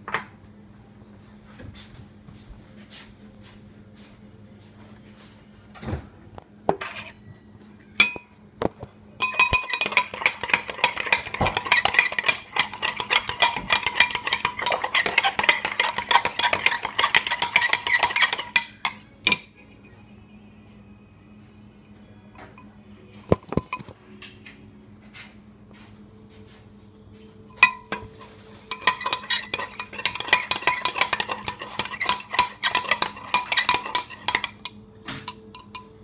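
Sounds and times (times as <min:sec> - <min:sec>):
spoon stirring clinking in cup: 0:06.7 - 0:07.2, 0:08.0 - 0:19.5, 0:22.6 - 0:24.0, 0:27.5 - 0:36.0.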